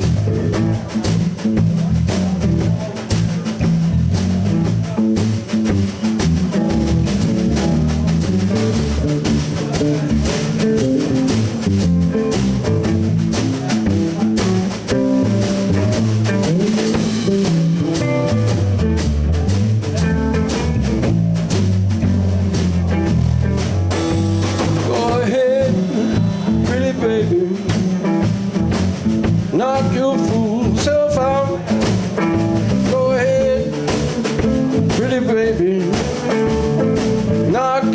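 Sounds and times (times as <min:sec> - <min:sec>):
blues band playing: 0:00.0 - 0:37.9
electric guitar lead: 0:04.6 - 0:29.4.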